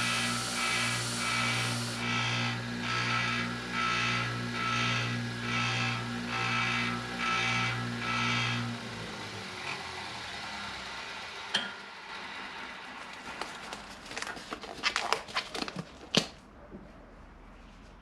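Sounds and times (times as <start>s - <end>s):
belt sander running: 0.0s - 11.5s.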